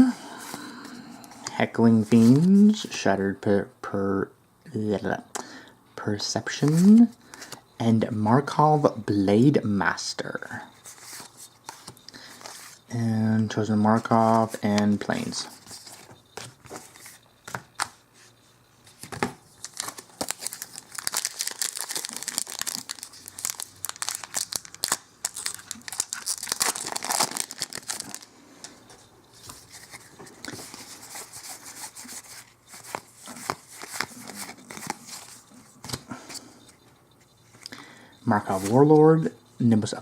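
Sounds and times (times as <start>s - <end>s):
foil wrapper tearing and crinkling: 19.6s - 28.3s
wrapper rustling: 19.6s - 28.3s.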